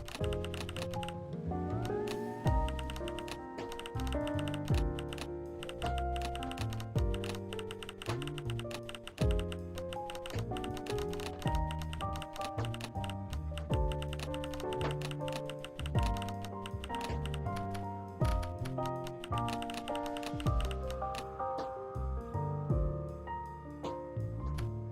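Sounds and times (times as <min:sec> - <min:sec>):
held chords and melody: 0:00.0 - 0:24.9
dense clicking percussion: 0:02.5 - 0:21.2.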